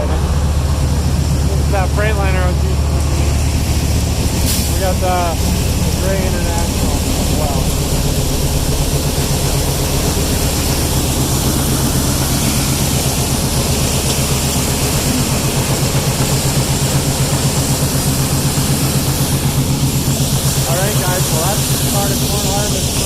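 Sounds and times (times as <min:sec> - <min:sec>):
diesel truck engine running: 0:00.0 - 0:23.0.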